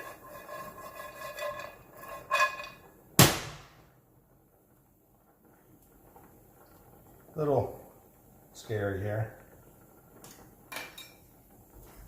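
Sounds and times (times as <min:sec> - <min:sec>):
metal pots and pans clanking: 0:00.0 - 0:02.9, 0:10.7 - 0:11.3.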